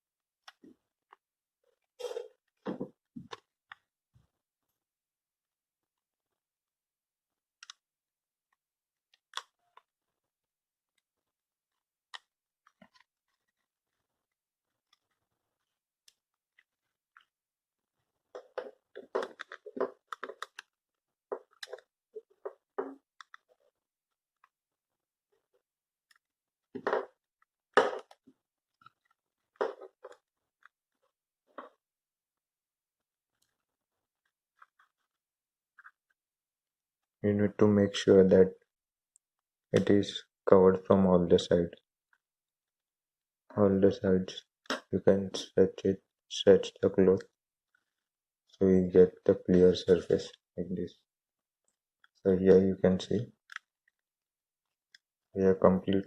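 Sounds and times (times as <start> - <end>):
plastic clicks: 18.4 - 20.7.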